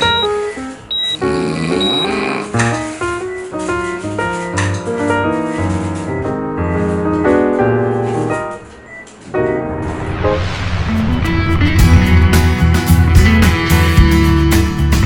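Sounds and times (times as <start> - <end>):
piano notes: 0.0 - 13.4
steady bass line: 11.0 - 14.8.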